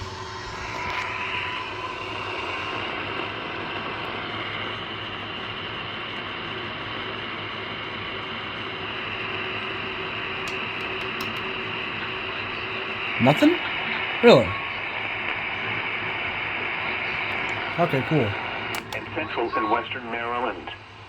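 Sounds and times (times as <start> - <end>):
faint clicks: 10.5 - 11.5.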